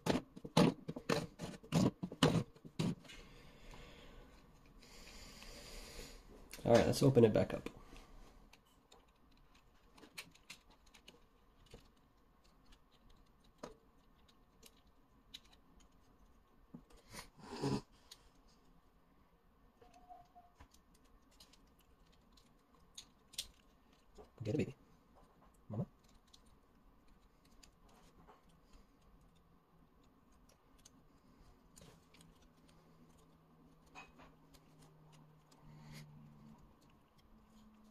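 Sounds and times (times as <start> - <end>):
plastic toy parts clicking: 8.5 - 16.1, 19.9 - 24.2.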